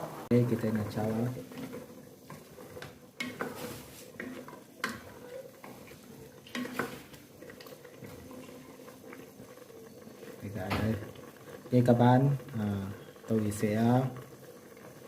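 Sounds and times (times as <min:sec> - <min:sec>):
spoon stirring meat in a pot: 0:00.8 - 0:11.2.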